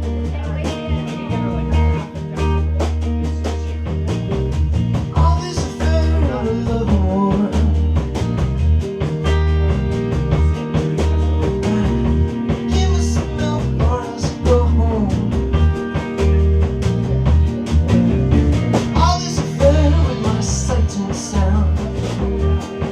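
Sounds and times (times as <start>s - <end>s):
live rock band playing: 0.0s - 22.9s
person singing: 5.1s - 8.0s, 9.7s - 15.5s, 18.9s - 22.2s.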